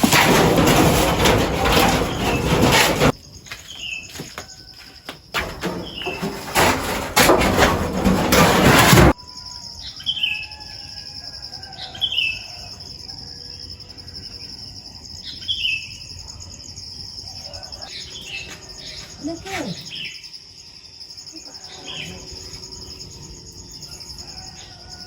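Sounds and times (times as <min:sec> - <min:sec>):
insect trill: 0:00.0 - 0:08.4, 0:09.1 - 0:25.0.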